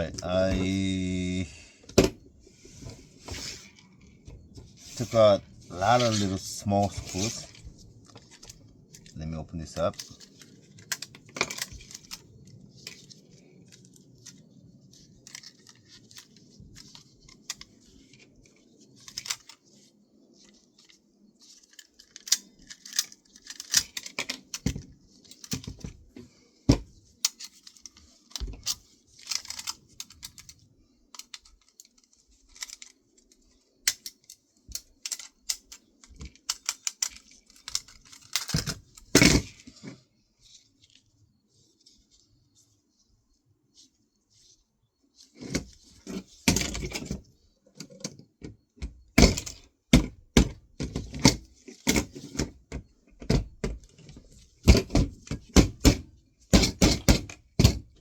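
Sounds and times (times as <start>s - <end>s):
plastic casing clicks and rattles: 19.0s - 19.6s, 21.7s - 25.9s.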